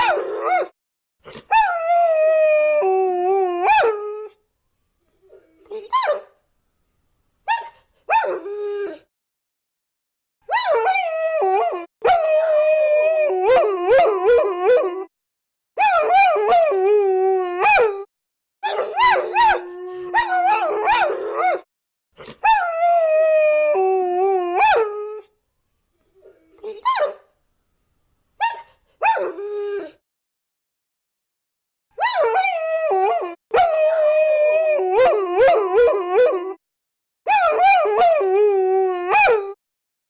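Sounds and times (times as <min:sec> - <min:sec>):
dogs howling: 0:18.7 - 0:21.6.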